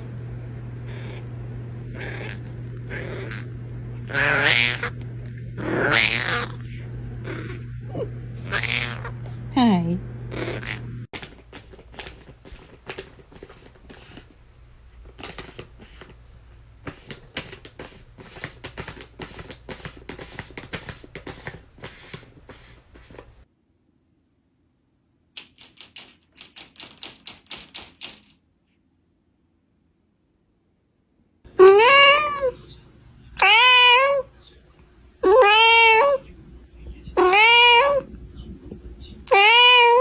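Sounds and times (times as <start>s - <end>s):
rapid clicking and tapping: 25.4s - 28.4s.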